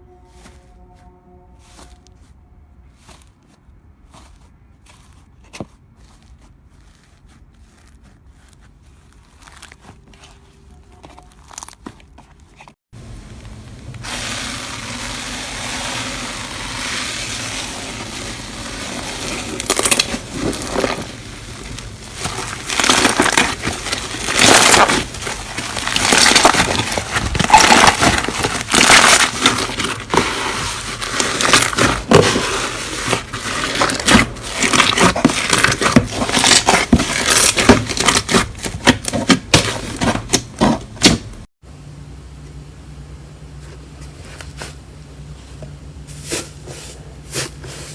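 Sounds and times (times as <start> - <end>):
slime crackling and popping: 14.0 - 41.2.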